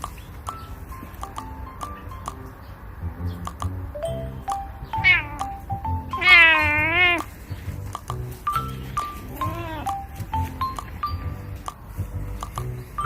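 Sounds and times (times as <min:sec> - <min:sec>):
light background music: 0:00.0 - 0:13.0
cat meowing: 0:04.9 - 0:07.3, 0:09.2 - 0:10.1.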